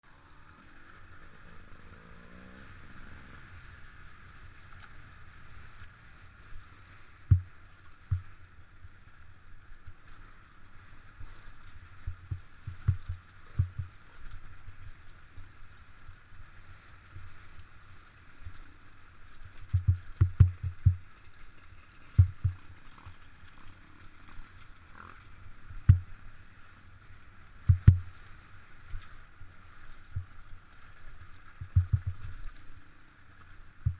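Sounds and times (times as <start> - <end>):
muffled motorcycle running: 0.0 - 28.4, 30.0 - 32.6, 33.2 - 33.9
heavy low thumps: 22.2 - 22.5.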